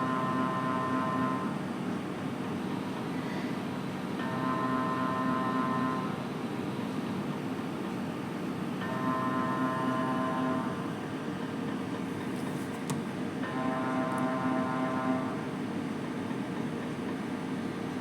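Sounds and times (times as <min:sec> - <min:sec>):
mri high buzzing tone: 0:00.0 - 0:01.6.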